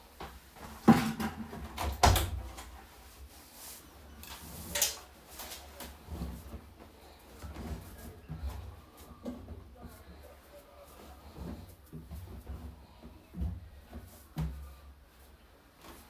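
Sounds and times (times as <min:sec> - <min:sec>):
household knocks and clatters: 0:00.6 - 0:02.8.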